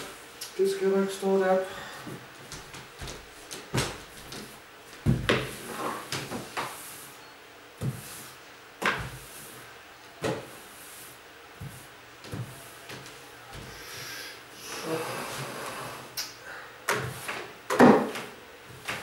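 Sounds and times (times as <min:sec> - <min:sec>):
furniture knocks and bumps: 0:02.4 - 0:06.5, 0:07.8 - 0:08.0, 0:08.8 - 0:09.3, 0:11.6 - 0:13.7.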